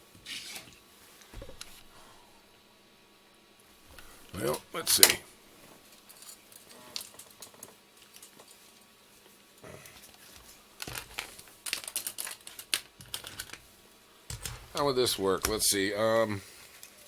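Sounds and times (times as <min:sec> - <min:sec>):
rustling on a workbench: 0:00.0 - 0:02.3.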